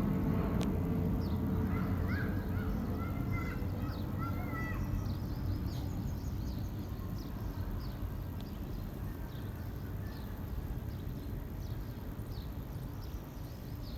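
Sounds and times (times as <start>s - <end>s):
steady low rumble: 0.0s - 4.2s
small birds chirping: 1.1s - 13.9s.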